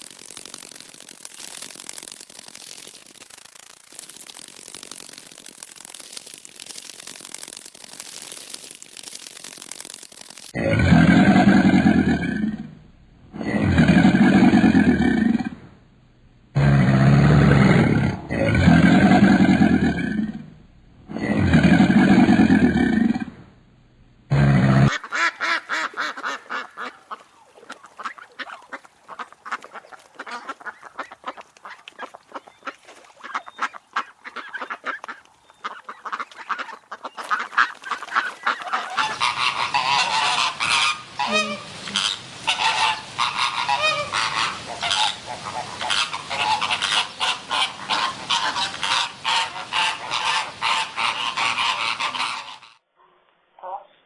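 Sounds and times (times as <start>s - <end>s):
deep roar: 10.6s - 15.8s, 16.5s - 23.5s, 24.3s - 24.9s
guinea fowl cackling: 24.9s - 32.4s, 33.2s - 52.8s.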